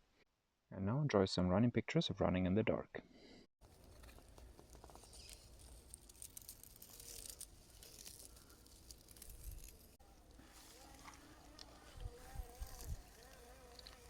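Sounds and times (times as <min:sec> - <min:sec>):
tyres crackling over rough ground: 0:03.6 - 0:14.0.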